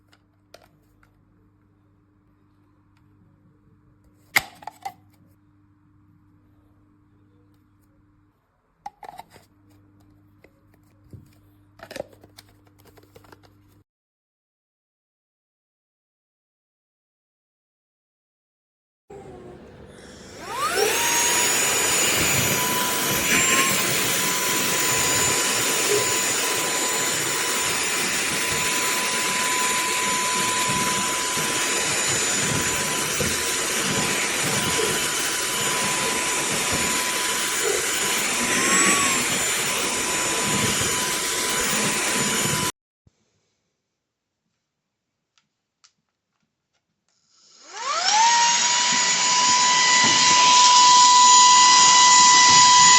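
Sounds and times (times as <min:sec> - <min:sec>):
handheld vacuum motor whine: 0:19.1 - 0:42.7, 0:47.5 - 0:52.9.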